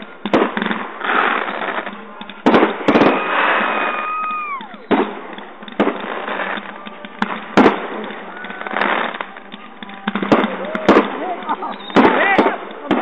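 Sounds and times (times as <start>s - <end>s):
fireworks bangs: 0.0s - 13.0s
firework whistle: 2.6s - 12.6s.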